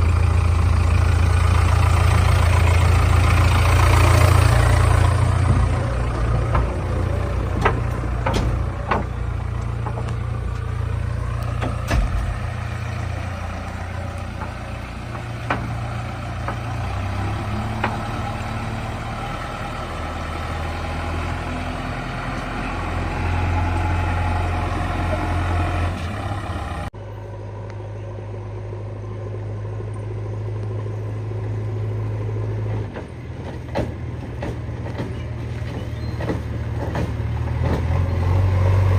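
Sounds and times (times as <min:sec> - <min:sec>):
backhoe diesel engine running: 0:00.0 - 0:38.9
sharp knocks: 0:07.5 - 0:10.2, 0:14.3 - 0:16.7.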